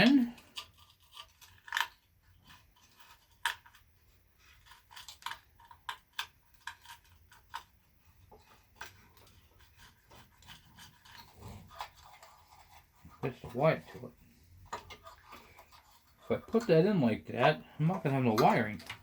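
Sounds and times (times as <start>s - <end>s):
small metal parts clicking: 0.0s - 3.9s.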